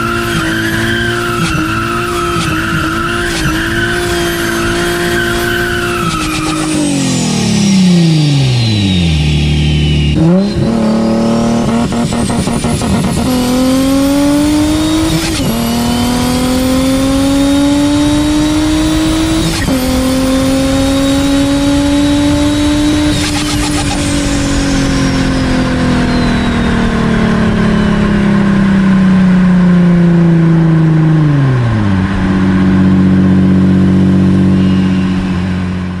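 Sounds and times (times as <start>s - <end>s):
turbo whistle: 0.0s - 15.6s, 23.0s - 28.5s, 34.1s - 35.7s
car engine accelerating: 0.0s - 36.0s.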